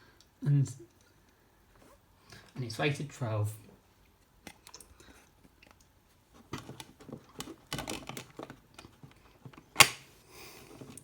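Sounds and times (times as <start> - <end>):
plastic case clicks and rustles: 6.4 - 10.1
plastic case snapping: 9.6 - 10.1.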